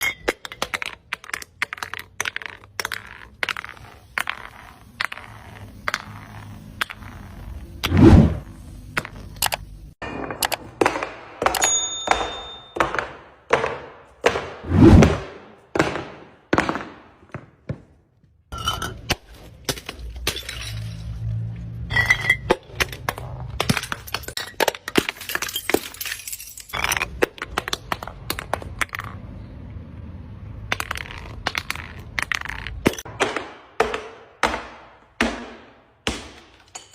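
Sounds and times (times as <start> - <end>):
glass bottles crushing and breaking: 0.0 - 5.6, 18.5 - 27.6, 36.3 - 36.9
glass crackling and crunching: 18.6 - 27.2.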